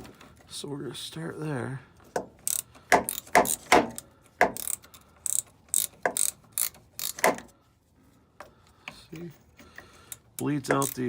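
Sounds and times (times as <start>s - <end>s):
socket ratchet clicking: 2.2s - 7.5s, 9.8s - 11.0s.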